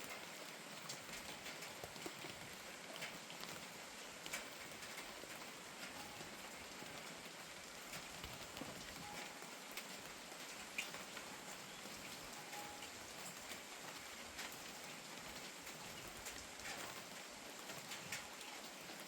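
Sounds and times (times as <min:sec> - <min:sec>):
gentle rain hiss: 0:00.0 - 0:19.0
drips ticking: 0:07.7 - 0:18.8.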